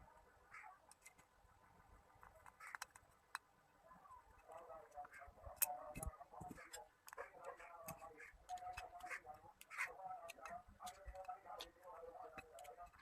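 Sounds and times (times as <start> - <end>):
faint small clicks and taps: 2.2 - 3.5.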